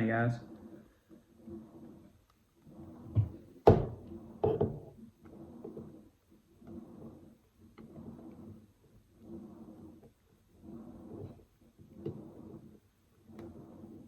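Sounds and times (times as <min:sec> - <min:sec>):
tools knocking on hard surface: 0:03.1 - 0:05.0.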